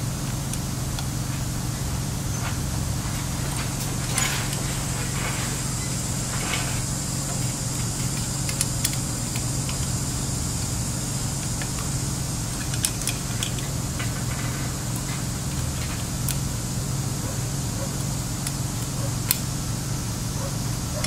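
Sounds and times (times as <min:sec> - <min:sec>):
low hum and hiss: 0:00.0 - 0:21.0
hand tool clicks: 0:07.4 - 0:10.0, 0:17.9 - 0:19.5.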